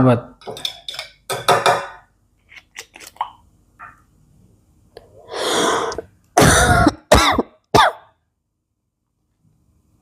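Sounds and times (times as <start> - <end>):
harsh breathy exhalation: 5.2 - 6.1.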